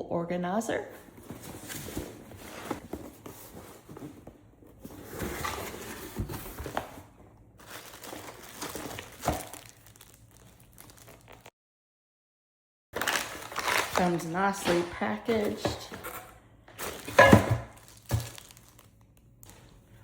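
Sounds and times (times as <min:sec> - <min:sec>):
packaging crinkling and tearing: 0:07.6 - 0:11.5, 0:13.0 - 0:15.7, 0:16.7 - 0:19.8.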